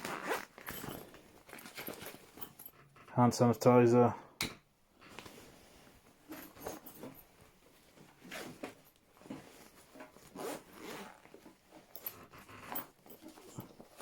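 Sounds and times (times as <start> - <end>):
bag zip: 0.0 - 2.5, 9.6 - 14.0
fabric bag rustling: 0.0 - 2.7, 5.1 - 14.0.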